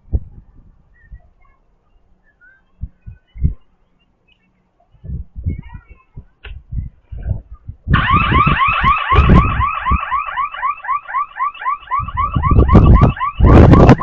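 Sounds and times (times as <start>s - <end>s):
burglar alarm siren warbling: 7.9s - 14.0s
low rumbling: 11.8s - 14.0s.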